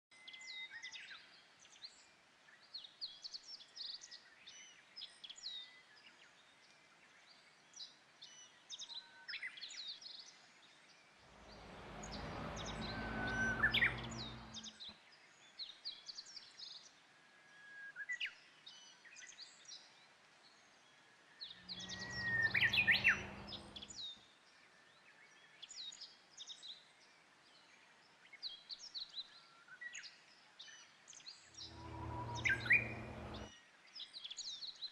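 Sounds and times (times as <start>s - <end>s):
bush warbler singing: 11.3s - 14.9s, 21.4s - 24.1s, 31.5s - 33.5s
small birds chirping: 11.3s - 16.4s, 18.6s - 24.2s, 30.8s - 33.5s.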